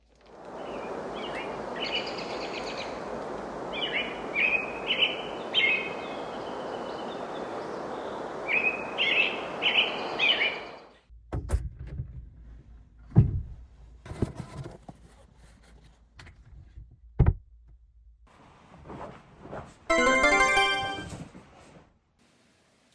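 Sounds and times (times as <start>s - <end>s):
birds chirping: 0.5s - 10.9s.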